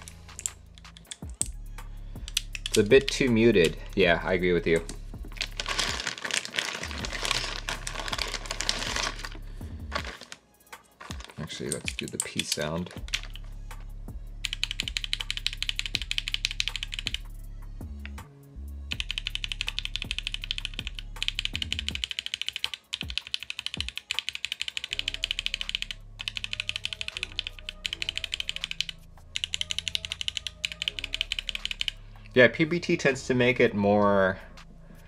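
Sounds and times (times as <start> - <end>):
mechanical keyboard typing: 11.0 - 13.4, 14.4 - 17.2, 18.9 - 32.0.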